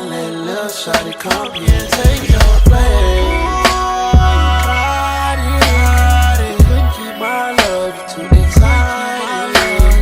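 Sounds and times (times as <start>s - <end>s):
gliding synth notes: 1.1s - 7.5s
deep bass notes: 1.7s - 6.9s.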